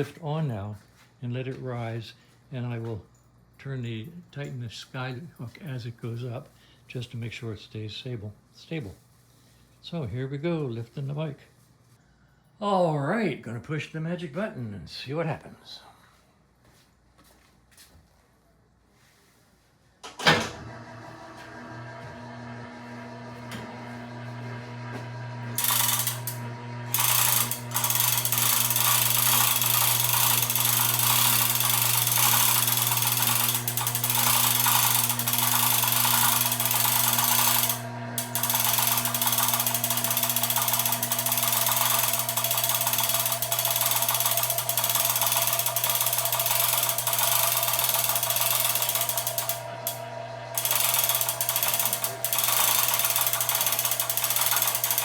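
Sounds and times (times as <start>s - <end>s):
lift motor humming: 20.1s - 55.0s
mechanical clatter: 25.5s - 55.0s.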